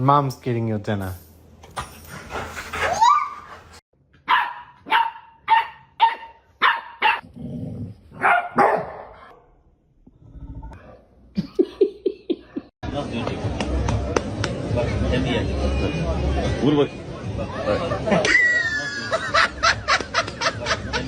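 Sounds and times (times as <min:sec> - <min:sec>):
dog yelping: 0:02.8 - 0:03.6
dog barking: 0:04.2 - 0:07.2, 0:08.2 - 0:09.5.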